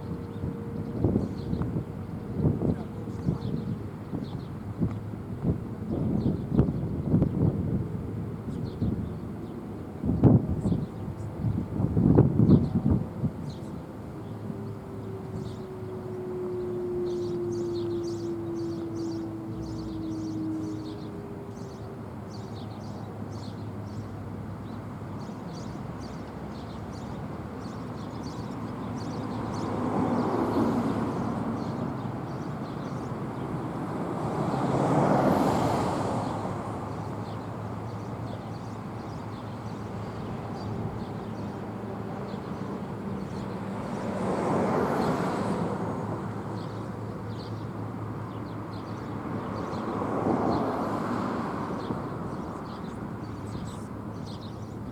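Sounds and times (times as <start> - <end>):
vehicles passing: 0.0 - 54.9.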